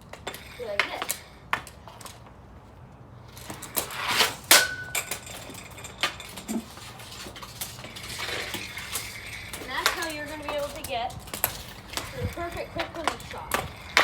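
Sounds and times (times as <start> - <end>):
hockey stick clicking on puck: 3.4 - 14.0.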